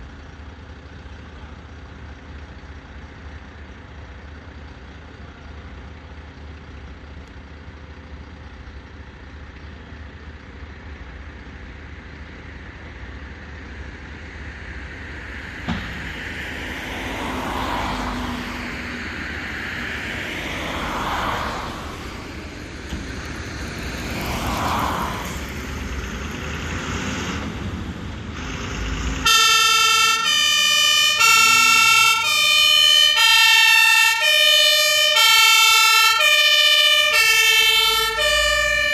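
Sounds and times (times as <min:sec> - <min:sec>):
fire engine engine running: 0:00.0 - 0:38.9
two-tone siren: 0:29.2 - 0:38.9.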